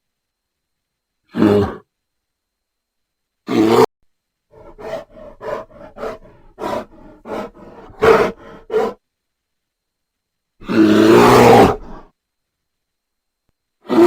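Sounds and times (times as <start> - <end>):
bear calling: 4.5 - 9.0, 10.6 - 12.1.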